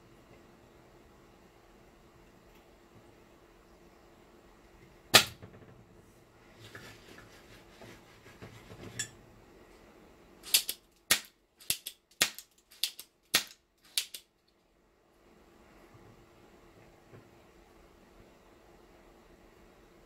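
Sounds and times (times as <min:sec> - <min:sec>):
solder sucker snapping: 0:10.4 - 0:14.2
sharp clicks: 0:10.4 - 0:14.3.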